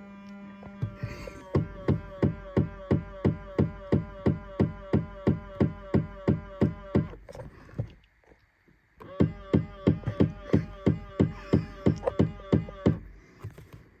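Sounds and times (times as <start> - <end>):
power mirror mechanical clicking: 9.0 - 13.9.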